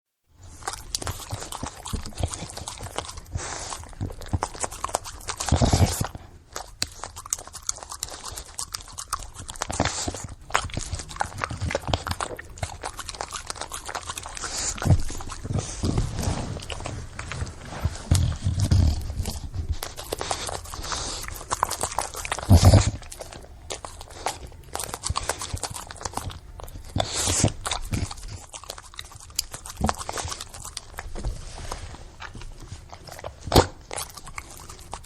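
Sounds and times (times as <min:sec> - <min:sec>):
dog breathing noisily: 0:00.5 - 0:06.4, 0:09.7 - 0:26.3
dog grunting: 0:10.9 - 0:24.4.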